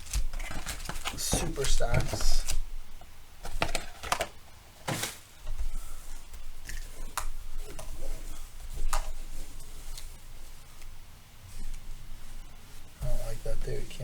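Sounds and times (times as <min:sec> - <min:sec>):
card packs clicking and tapping on table: 0:00.0 - 0:02.6, 0:03.4 - 0:05.2.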